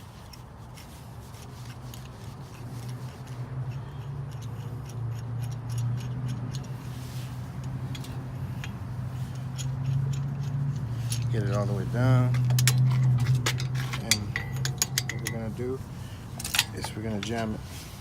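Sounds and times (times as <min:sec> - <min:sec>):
steady low hum: 0:00.0 - 0:18.0
light metallic clicks and taps: 0:07.6 - 0:15.8.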